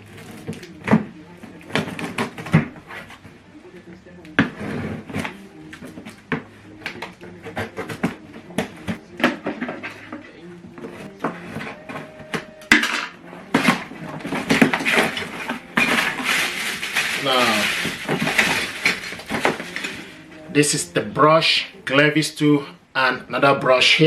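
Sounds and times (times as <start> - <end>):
packaging rustling: 0.0 - 3.3, 13.4 - 20.5
plastic parts clacking: 11.5 - 20.3.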